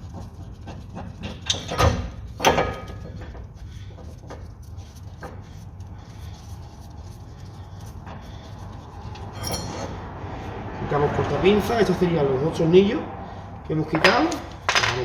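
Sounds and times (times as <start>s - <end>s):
metal tools clanking: 9.2s - 10.0s.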